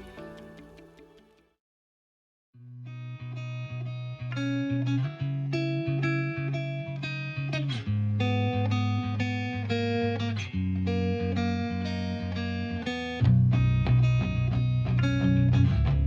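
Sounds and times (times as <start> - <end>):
plucked melody: 0.0 - 1.4
low held bass notes: 13.2 - 16.0.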